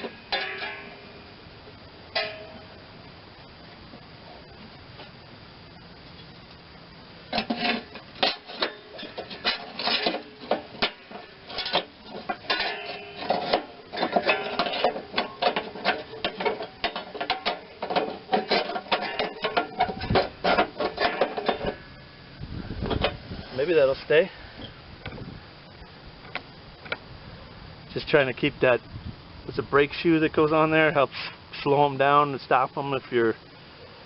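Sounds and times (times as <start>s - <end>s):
tools clinking against metal: 0.0s - 1.0s, 7.4s - 21.9s.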